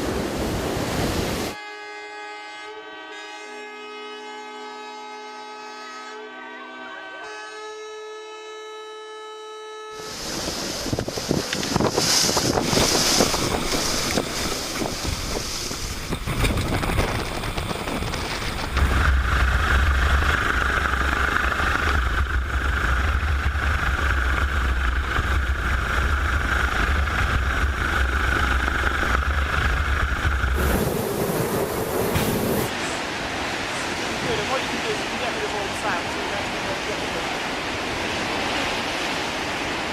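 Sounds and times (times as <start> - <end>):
heavy sea noise: 0.0 - 1.6, 10.0 - 39.9
storm wind: 0.0 - 1.6, 10.0 - 39.9
wind buffeting microphone: 10.1 - 39.9
deep rumble: 10.2 - 34.2.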